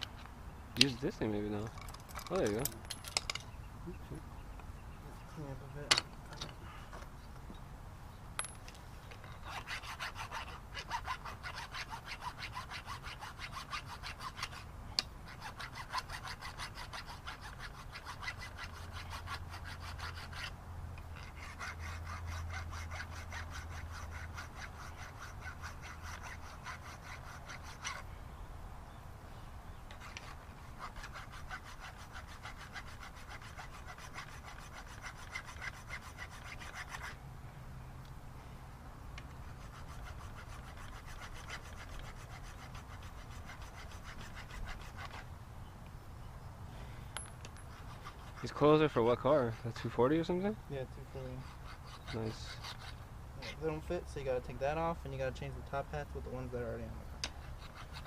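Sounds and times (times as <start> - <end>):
hand scraping strokes: 9.3 - 28.1, 29.9 - 37.2, 39.2 - 45.3, 46.7 - 50.4, 51.1 - 54.9, 57.3 - 58.0.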